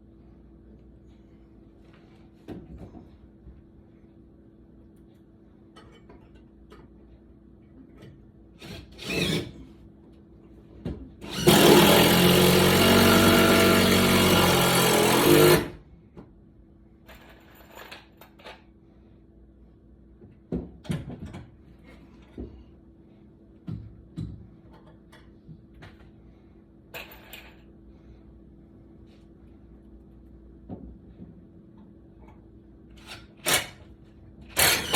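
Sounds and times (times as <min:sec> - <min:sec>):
power tool running: 0:09.0 - 0:09.6, 0:11.2 - 0:15.8.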